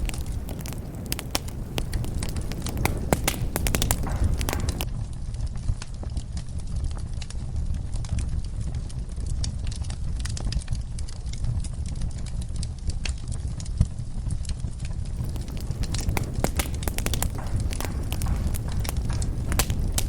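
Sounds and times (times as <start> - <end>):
wood fire crackling and popping: 0.0 - 4.9, 15.2 - 20.0
low rumble of flames: 0.0 - 20.0.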